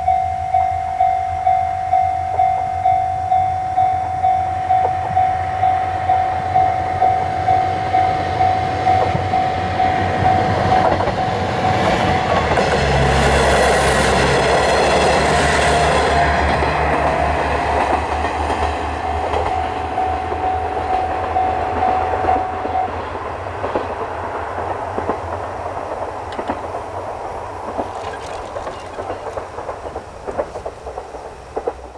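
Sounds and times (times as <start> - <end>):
level crossing bell ringing: 0.0 - 12.3, 19.0 - 23.0
train wheels clattering: 0.0 - 31.9.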